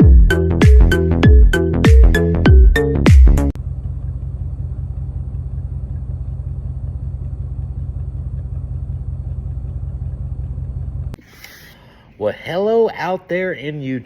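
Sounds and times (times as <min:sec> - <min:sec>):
low pulsing rumble: 0:00.0 - 0:11.2.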